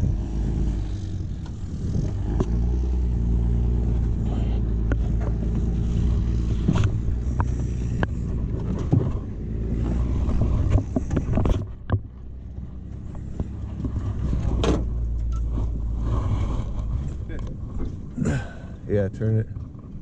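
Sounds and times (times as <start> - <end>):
engine idling: 0.0 - 20.0
knocks and clunks: 3.8 - 18.2.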